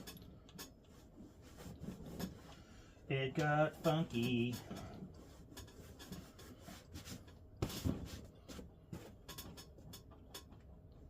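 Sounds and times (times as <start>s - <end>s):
handling and rubbing noises: 0.8s - 9.8s.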